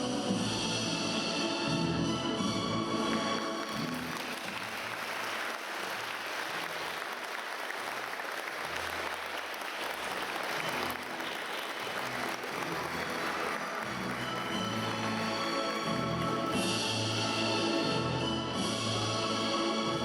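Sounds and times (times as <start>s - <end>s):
audience applauding: 3.1s - 17.9s.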